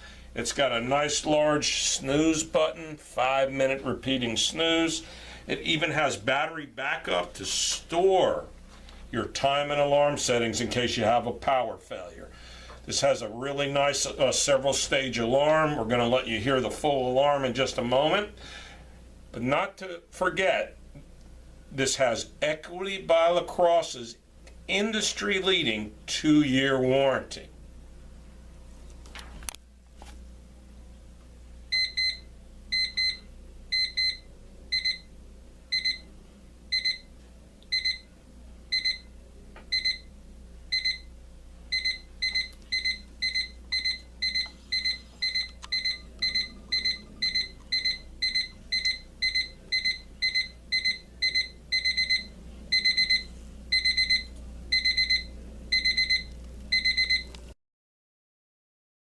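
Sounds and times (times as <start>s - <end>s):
alarm clock beeping: 31.7s - 35.0s, 35.7s - 36.1s, 36.7s - 37.0s, 37.7s - 38.0s, 38.7s - 39.0s, 39.7s - 40.0s, 40.7s - 41.1s, 41.7s - 57.3s.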